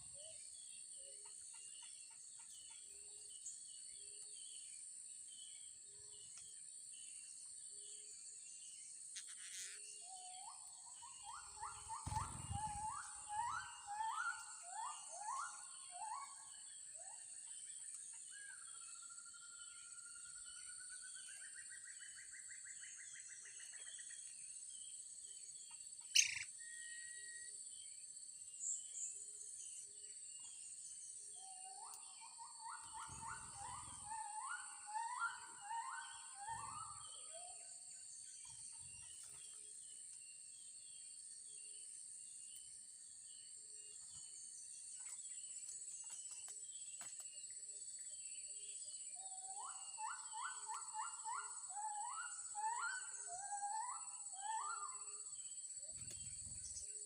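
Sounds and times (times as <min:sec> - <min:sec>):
rising whistled bird notes: 0:10.0 - 0:16.6, 0:26.2 - 0:27.5, 0:31.4 - 0:37.8, 0:49.2 - 0:55.2
birds chirping: 0:32.8 - 0:37.3.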